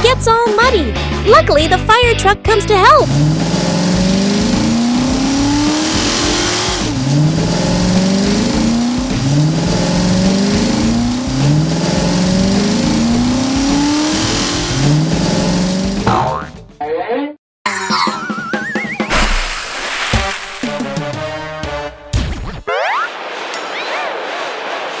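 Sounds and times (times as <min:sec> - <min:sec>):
race car engine revving: 0:02.6 - 0:16.3.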